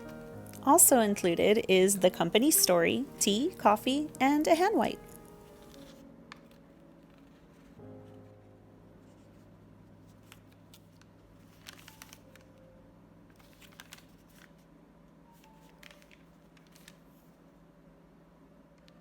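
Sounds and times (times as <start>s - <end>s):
paper packaging rustling and clicking: 5.1s - 8.4s, 10.1s - 12.7s, 13.3s - 14.7s, 15.3s - 17.4s.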